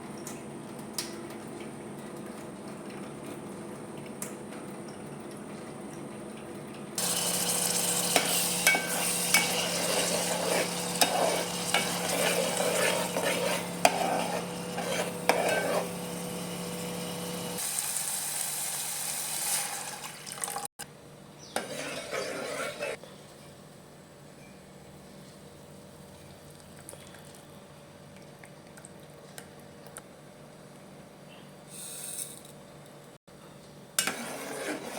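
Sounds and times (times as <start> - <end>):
spatula scraping a pan: 7.0 - 16.0, 21.5 - 23.0, 34.0 - 34.9
food sizzling in hot oil: 7.0 - 20.7.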